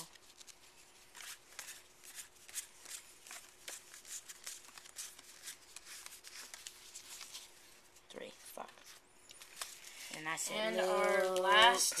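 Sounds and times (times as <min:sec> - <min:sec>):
trading cards flicked and rustled: 0:00.0 - 0:07.6, 0:09.3 - 0:10.3.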